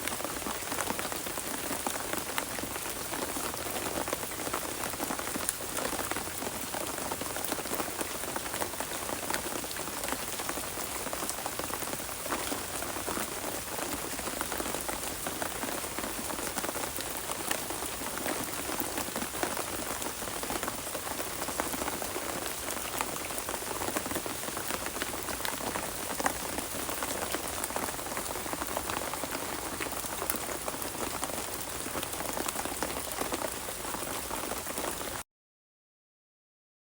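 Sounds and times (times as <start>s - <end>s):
steady rain falling: 0.0s - 35.2s.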